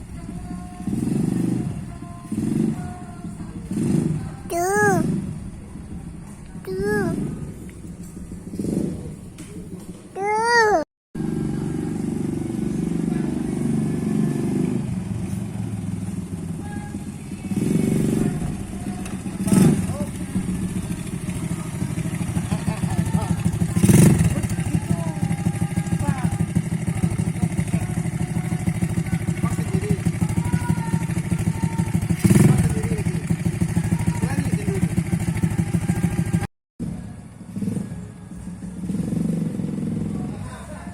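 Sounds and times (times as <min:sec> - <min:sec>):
small atv engine running: 0:00.0 - 0:05.2, 0:11.2 - 0:36.5.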